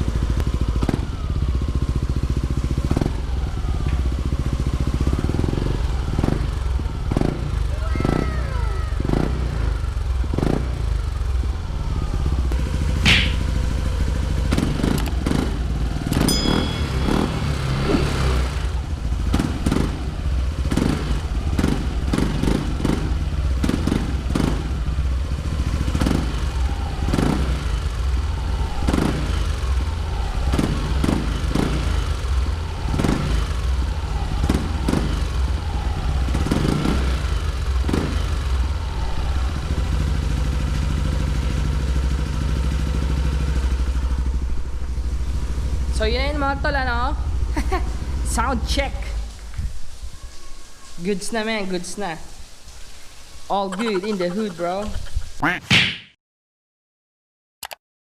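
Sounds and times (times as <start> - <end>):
scooter engine exhaust note: 12.6 - 14.5, 15.8 - 21.5.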